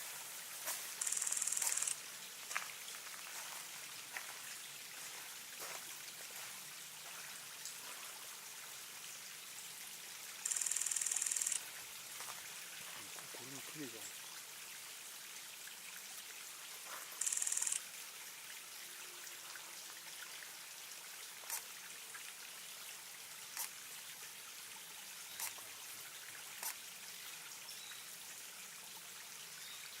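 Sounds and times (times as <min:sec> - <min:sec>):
water trickling into bird bath: 0:00.0 - 0:30.0
sharp ticks: 0:01.0 - 0:02.0, 0:10.4 - 0:11.6, 0:17.2 - 0:17.8.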